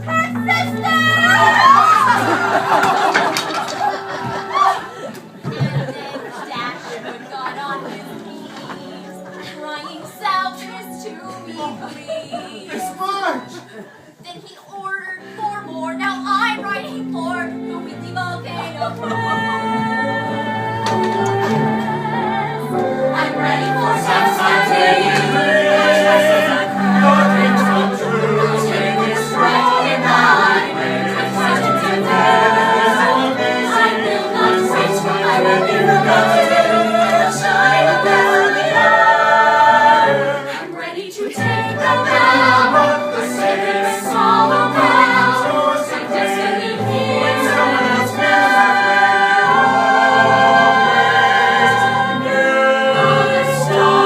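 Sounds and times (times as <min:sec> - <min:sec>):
chorus singing with accompaniment: 0:00.0 - 0:14.0, 0:18.6 - 0:54.0.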